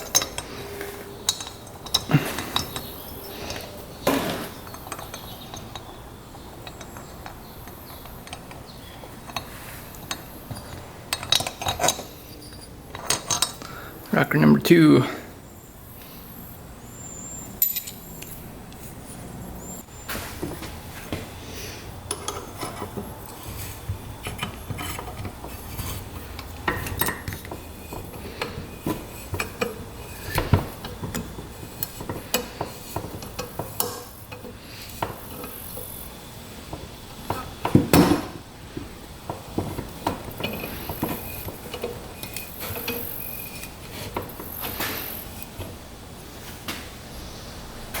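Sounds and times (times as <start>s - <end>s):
metal tools and parts clinking: 0.0s - 13.8s, 17.2s - 18.4s, 22.0s - 36.1s, 39.3s - 45.8s.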